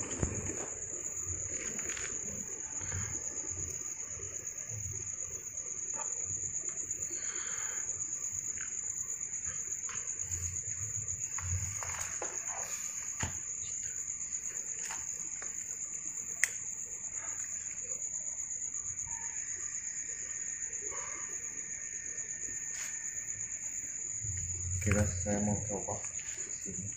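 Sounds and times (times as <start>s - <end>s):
crickets trilling: 0.0s - 26.9s.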